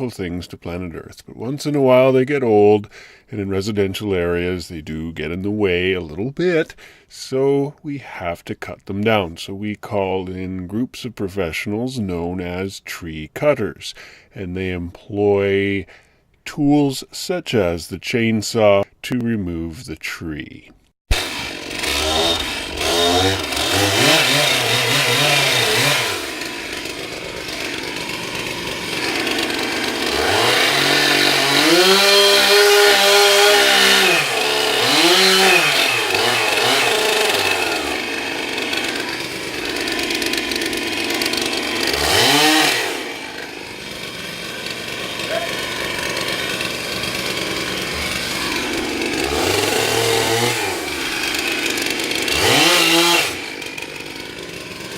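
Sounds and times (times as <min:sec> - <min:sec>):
chainsaw engine revving: 0:21.1 - 0:54.9.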